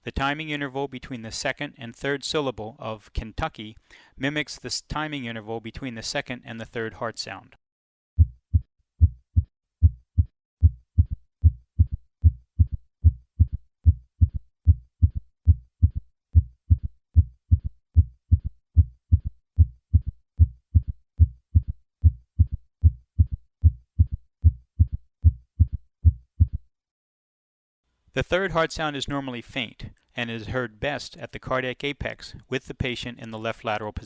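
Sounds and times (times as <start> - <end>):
heartbeat through stethoscope: 8.2 - 26.7.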